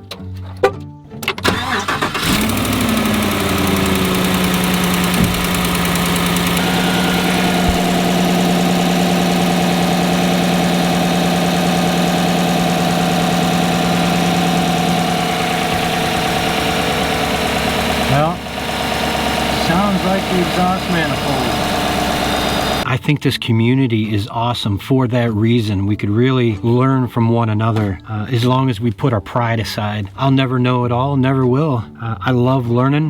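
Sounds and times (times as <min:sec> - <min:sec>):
truck engine cranking and starting: 0:01.2 - 0:22.9
truck engine idling: 0:01.5 - 0:22.8.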